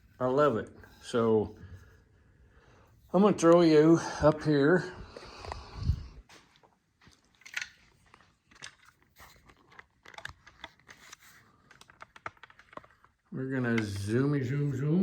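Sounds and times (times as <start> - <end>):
objects being handled clicking: 7.1 - 14.2.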